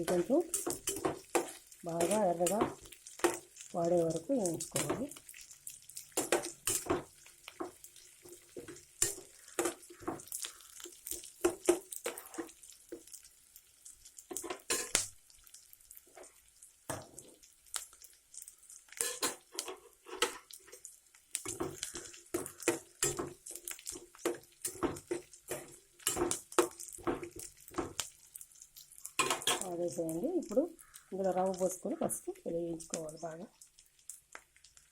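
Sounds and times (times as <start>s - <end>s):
metal spoon scraping a pan: 0.0s - 3.5s, 6.0s - 12.6s, 14.3s - 15.1s, 19.0s - 28.1s, 29.0s - 29.7s
onions frying: 0.0s - 34.9s.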